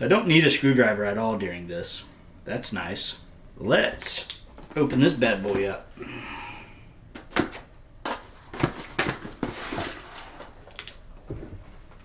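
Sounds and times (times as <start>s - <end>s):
packaging rustle: 8.1s - 11.0s.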